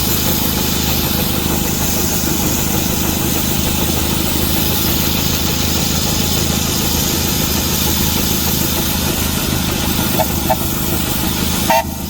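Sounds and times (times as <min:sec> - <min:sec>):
steam engine running: 0:00.0 - 0:12.0.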